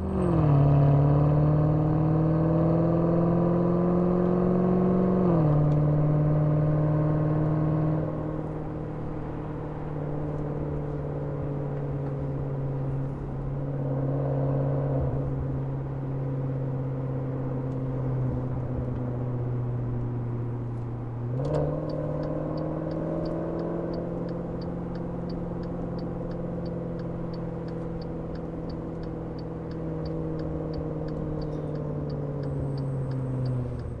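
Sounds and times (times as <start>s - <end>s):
car engine exhaust: 18.6s - 34.0s.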